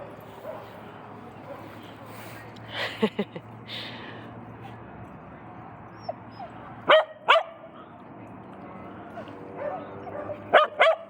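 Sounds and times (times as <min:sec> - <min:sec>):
dog barking: 0:06.9 - 0:07.6, 0:09.6 - 0:11.0.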